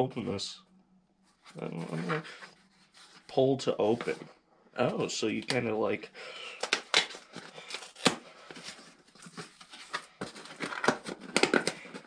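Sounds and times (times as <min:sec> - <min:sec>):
packaging clicking and rustling: 0:06.4 - 0:12.0.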